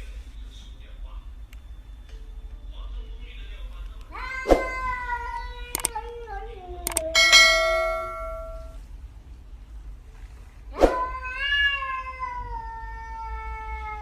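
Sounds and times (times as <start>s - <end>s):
cat meowing: 4.1s - 8.7s, 10.9s - 14.0s
sharp click: 5.7s - 5.9s, 6.9s - 7.2s.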